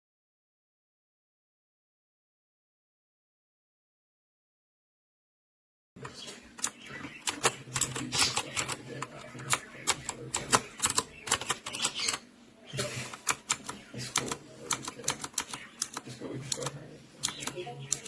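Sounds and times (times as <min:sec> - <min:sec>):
mechanical keyboard typing: 0:06.0 - 0:12.2, 0:13.0 - 0:18.0.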